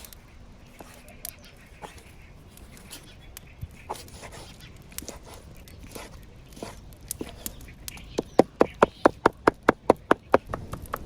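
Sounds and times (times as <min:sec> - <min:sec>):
knife chopping on wooden board: 0:08.2 - 0:10.9.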